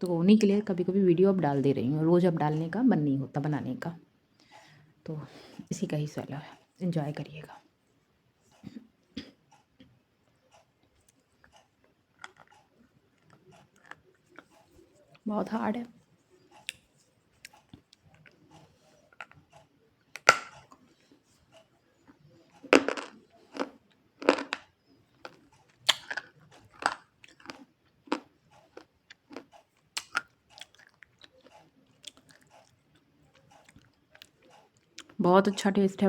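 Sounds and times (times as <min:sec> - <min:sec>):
chewing hard clay crunches: 0:11.0 - 0:15.2, 0:22.0 - 0:35.2.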